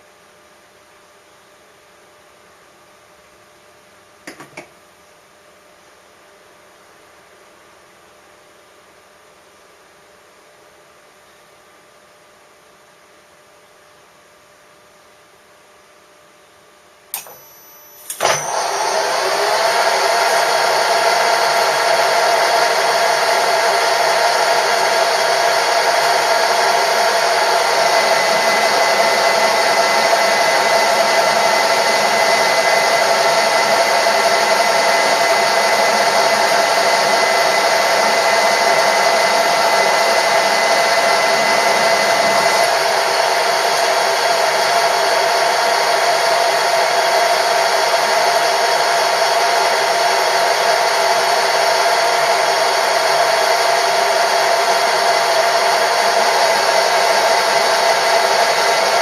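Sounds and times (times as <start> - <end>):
motor switch click: 17.1 - 18.6
high steady tone: 17.1 - 43.6
machine tool motor running: 17.2 - 59.0.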